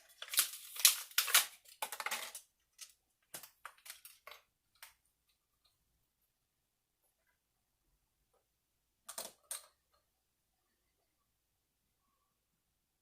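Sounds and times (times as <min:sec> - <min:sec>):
crinkling and rustling: 0:00.0 - 0:05.4.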